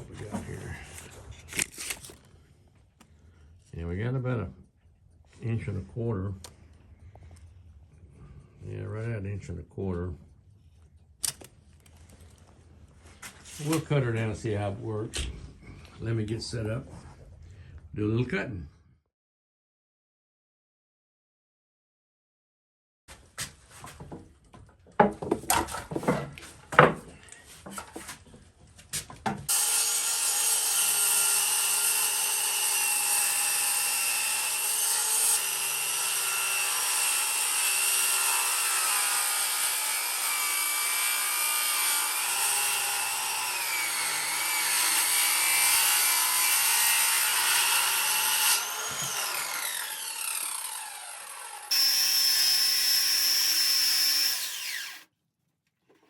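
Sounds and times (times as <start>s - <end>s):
wood knocking: 23.8s - 28.2s
table saw cutting wood: 29.5s - 55.1s.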